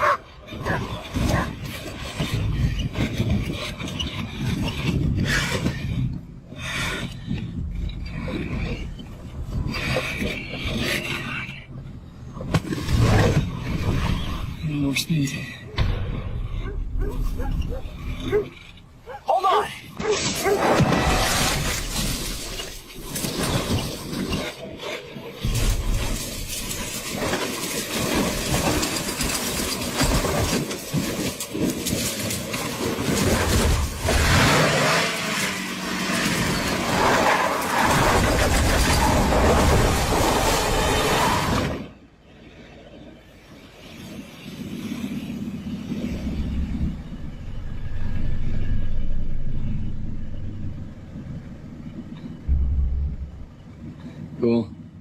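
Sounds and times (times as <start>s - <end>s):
knocks and rattles: 20.0s - 34.1s
vehicle rumbling fast: 32.2s - 55.0s
deep steady rumble: 44.6s - 55.0s.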